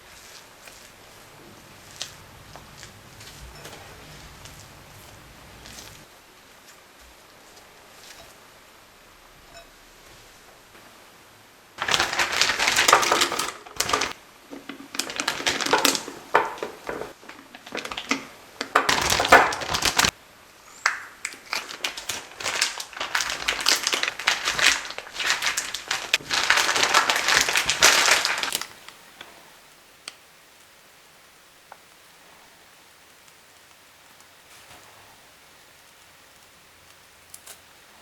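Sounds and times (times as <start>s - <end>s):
plastic crinkling: 0.0s - 8.4s, 11.8s - 29.3s.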